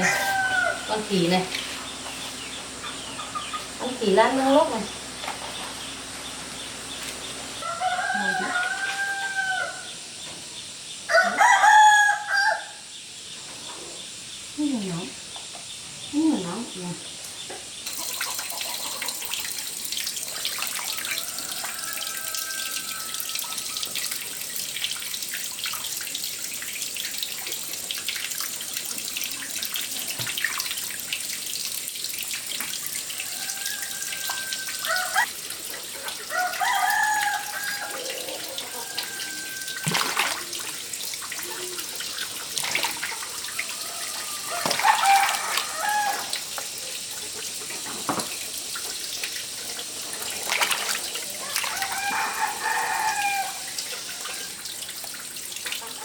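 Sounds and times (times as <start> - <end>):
chickens clucking: 0.0 - 9.4, 17.9 - 19.8, 33.1 - 40.7, 49.4 - 54.2
water running: 0.0 - 9.6, 17.9 - 56.0.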